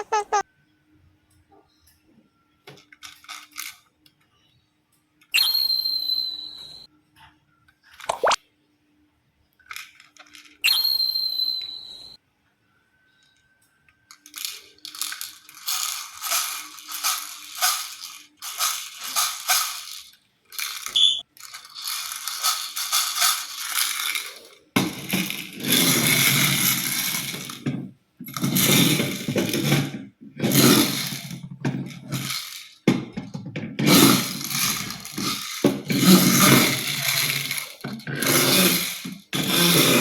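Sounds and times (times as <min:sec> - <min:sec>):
plastic toys clattering and rattling: 0:02.7 - 0:04.1, 0:09.5 - 0:12.0, 0:14.0 - 0:40.0.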